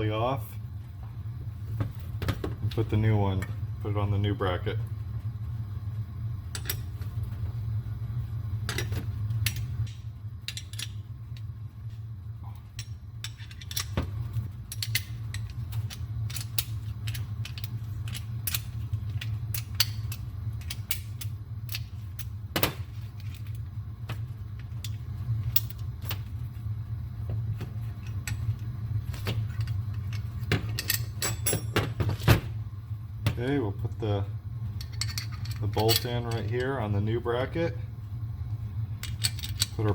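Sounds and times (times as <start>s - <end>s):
steady low hum: 0.0s - 39.9s
metal tools clinking: 29.5s - 32.0s, 34.8s - 36.8s.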